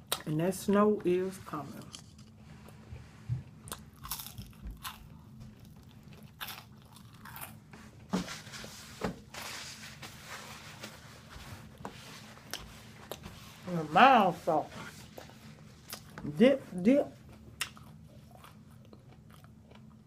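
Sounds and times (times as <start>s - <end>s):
crunching fried chicken: 3.7s - 7.6s
wet chewing: 17.3s - 20.0s.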